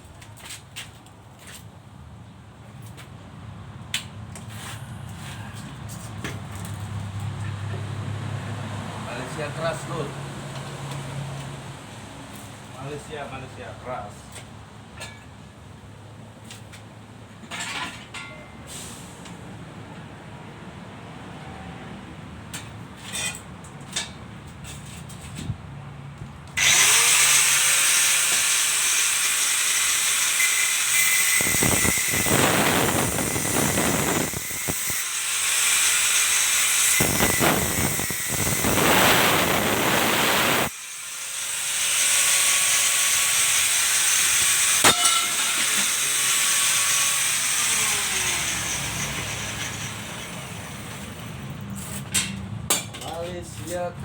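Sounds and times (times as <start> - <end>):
angle grinder grinding steel: 26.6 - 51.4.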